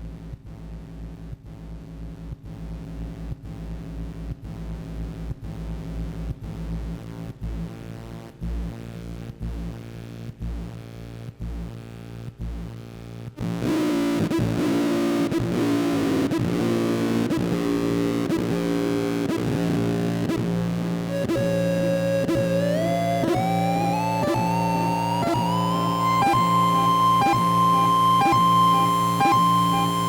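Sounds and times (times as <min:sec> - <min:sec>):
distorted synthesizer drone: 0:13.6 - 0:30.0
high synthesizer tone gliding upward: 0:21.1 - 0:30.0.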